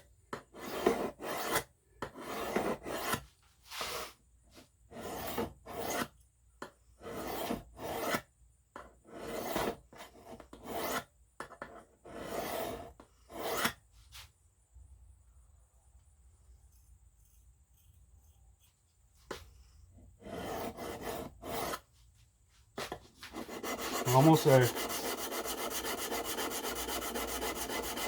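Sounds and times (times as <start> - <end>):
knife scraping on sharpening stone: 5.0 - 6.1, 10.6 - 11.0, 20.2 - 21.8.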